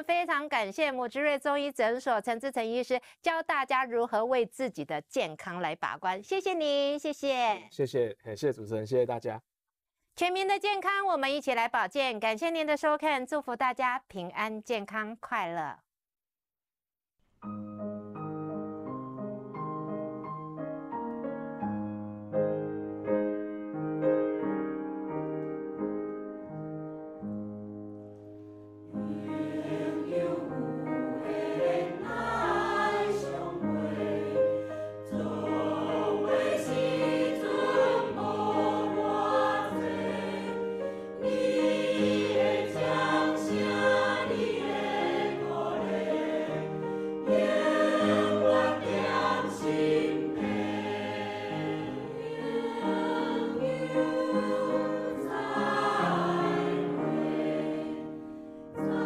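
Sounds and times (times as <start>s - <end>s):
theme music with choir singing: 28.9s - 59.0s.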